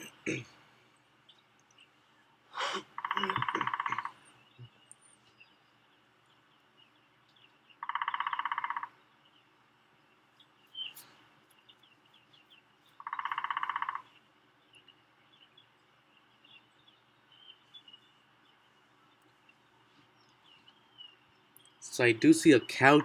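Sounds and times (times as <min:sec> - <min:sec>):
animal rapid trill: 0:03.0 - 0:04.2, 0:07.8 - 0:08.9.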